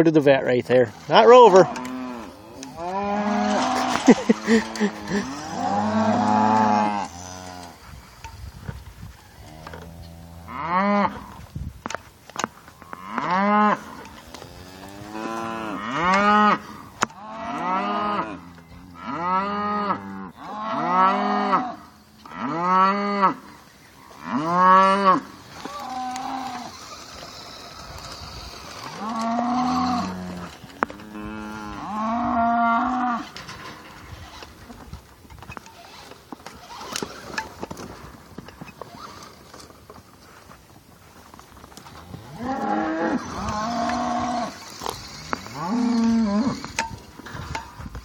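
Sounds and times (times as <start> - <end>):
cattle mooing: 0.9 - 7.9, 9.4 - 11.3, 12.9 - 23.5, 24.1 - 33.4, 42.1 - 46.9.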